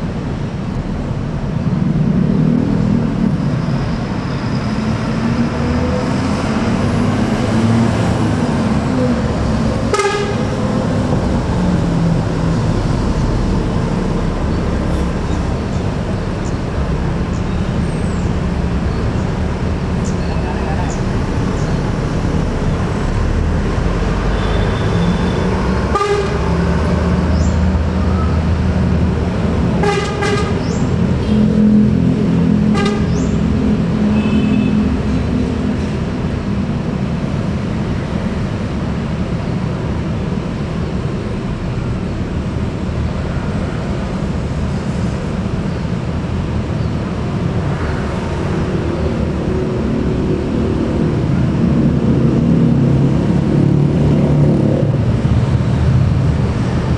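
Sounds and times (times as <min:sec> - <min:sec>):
bus diesel engines droning: 0:00.0 - 0:56.9
bus horn toots: 0:09.8 - 0:10.8, 0:24.3 - 0:26.6, 0:29.7 - 0:31.6, 0:32.6 - 0:33.4, 0:34.0 - 0:35.0.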